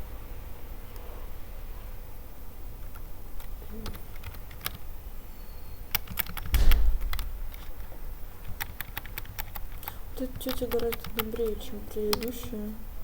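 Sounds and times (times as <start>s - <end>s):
keyboard typing: 2.8s - 4.9s, 5.9s - 12.7s
dull low thump: 6.5s - 8.0s.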